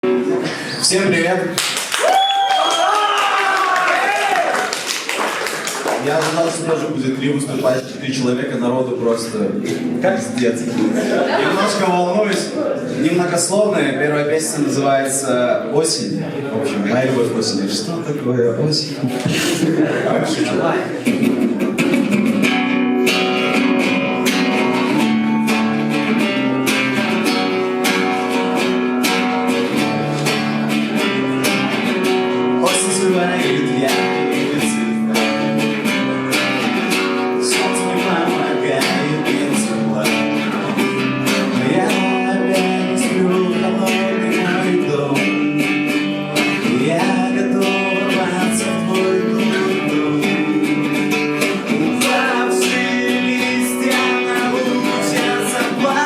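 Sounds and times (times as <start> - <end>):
guitar strumming chords: 9.5 - 11.8, 19.0 - 56.0.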